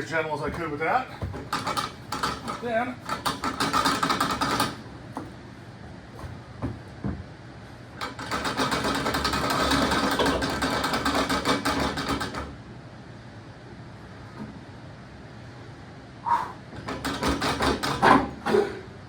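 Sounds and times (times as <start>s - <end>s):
rapid mechanical clattering: 0.0s - 5.2s, 7.9s - 12.6s, 16.7s - 18.8s.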